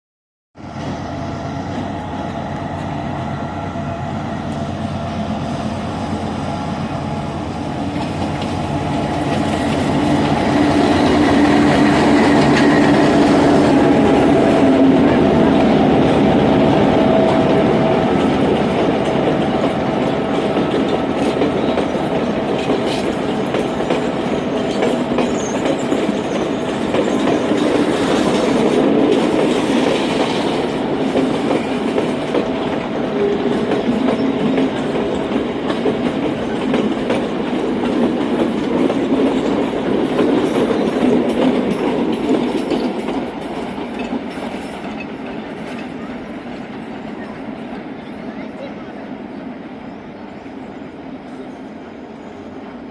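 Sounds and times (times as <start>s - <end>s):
train rumbling along track: 0.6s - 52.9s
wheels clicking over rail joints: 7.8s - 47.8s.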